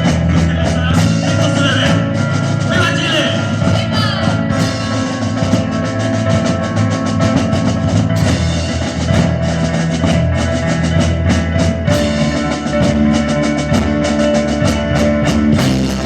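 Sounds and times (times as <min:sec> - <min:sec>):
bass drum: 0:00.0 - 0:16.0
rock music: 0:00.0 - 0:16.0.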